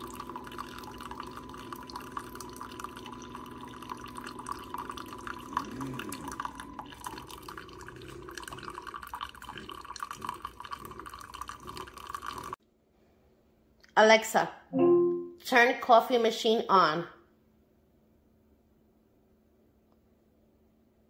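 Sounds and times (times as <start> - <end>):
coffee maker humming: 0.0 - 12.6
liquid dripping and bubbling: 0.0 - 12.6.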